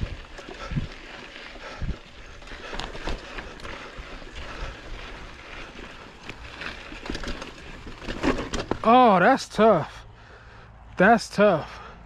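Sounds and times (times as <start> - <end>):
bike tyres rolling over rock: 0.0 - 9.6
bike knocks and clicks: 7.0 - 9.0.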